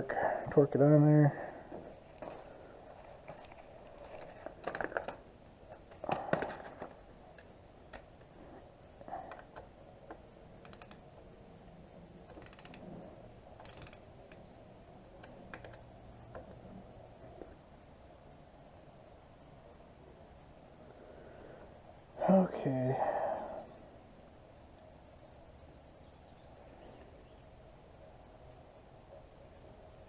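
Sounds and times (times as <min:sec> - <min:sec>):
torque wrench ratchet clicks: 0:10.6 - 0:11.0, 0:12.3 - 0:12.8, 0:13.6 - 0:14.4.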